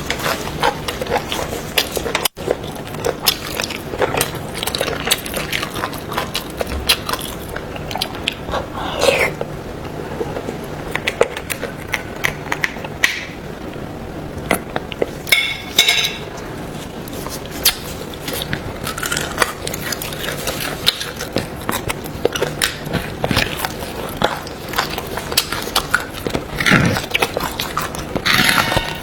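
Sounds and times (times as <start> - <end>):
eating clicks and smacks: 0.0 - 8.6, 10.4 - 13.4, 17.6 - 29.0.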